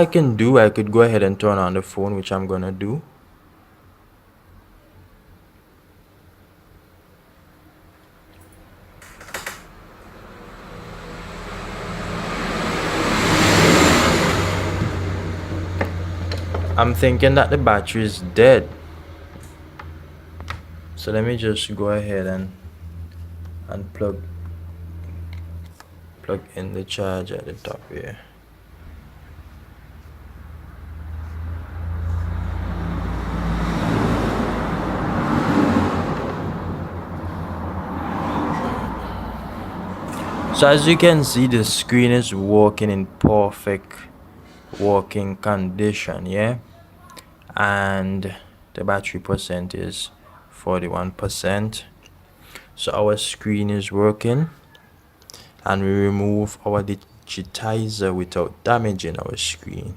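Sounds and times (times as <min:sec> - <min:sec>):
road noise: 0:05.4 - 0:59.9
vehicle driving by: 0:08.7 - 0:46.2.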